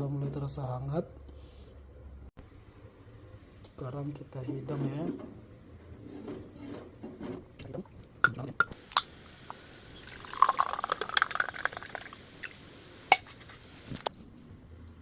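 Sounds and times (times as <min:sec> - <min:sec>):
milk pouring into a glass: 0:10.0 - 0:12.2.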